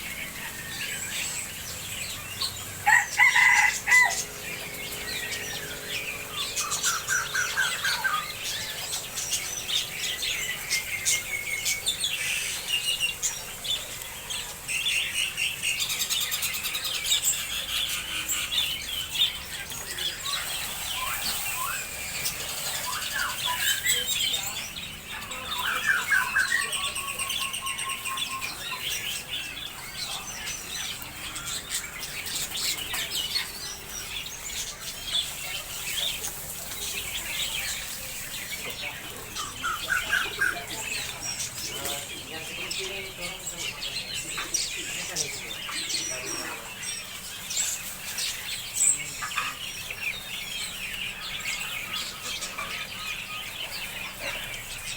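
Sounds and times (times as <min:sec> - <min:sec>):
small birds chirping: 0:00.0 - 0:54.9.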